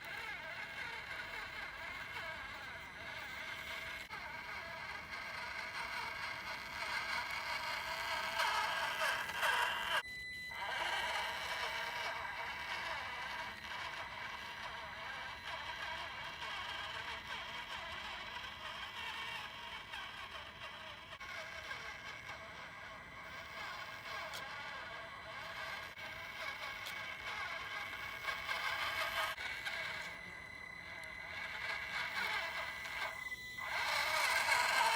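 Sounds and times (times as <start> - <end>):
small electric motor whining: 0.0 - 34.9.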